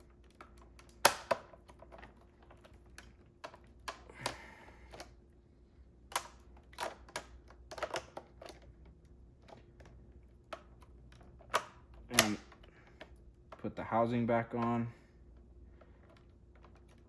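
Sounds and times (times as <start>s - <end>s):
plastic clicks and knocks: 0.0s - 5.1s, 6.1s - 13.7s.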